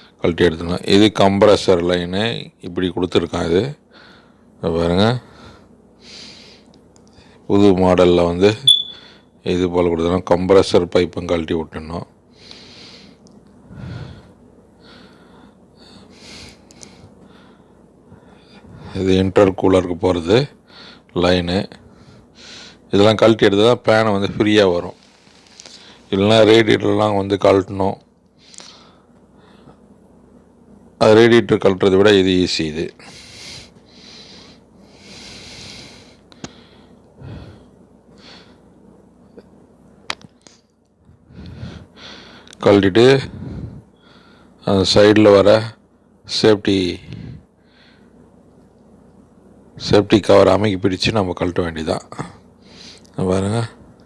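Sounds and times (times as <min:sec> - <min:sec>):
person breathing softly: 0:12.3 - 0:19.0, 0:33.0 - 0:38.7, 0:41.2 - 0:42.5, 0:43.2 - 0:44.6, 0:47.0 - 0:48.2.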